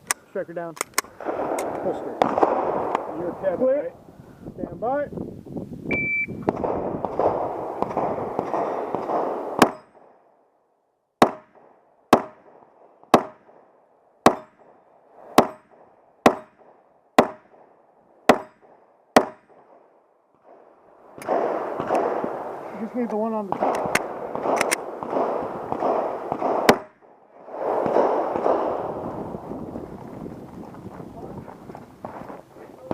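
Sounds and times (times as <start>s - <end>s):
shot timer beep: 5.9s - 6.4s
handgun shots: 6.5s - 10.1s, 13.1s - 13.5s, 14.2s - 14.7s, 15.4s - 17.6s, 18.3s - 19.6s, 21.2s - 22.3s, 23.5s - 27.0s.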